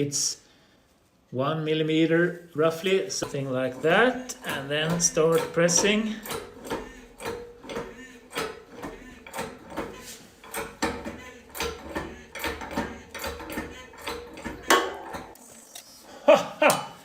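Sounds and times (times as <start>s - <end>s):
hydraulic press clicks and clunks: 3.1s - 15.5s.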